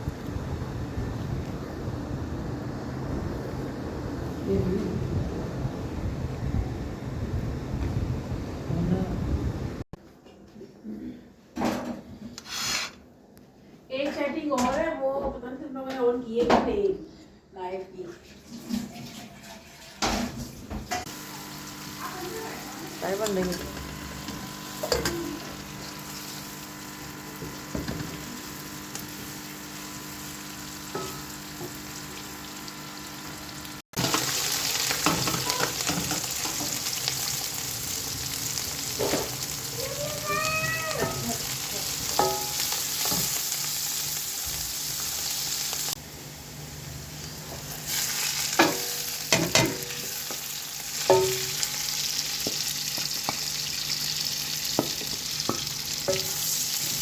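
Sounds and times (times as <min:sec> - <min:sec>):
food sizzling in a pan: 0:18.5 - 0:57.0.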